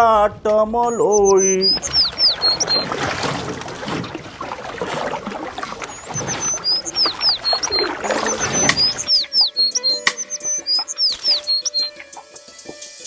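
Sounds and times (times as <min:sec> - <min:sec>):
birds chirping: 0:01.1 - 0:12.2
running water: 0:01.4 - 0:12.2.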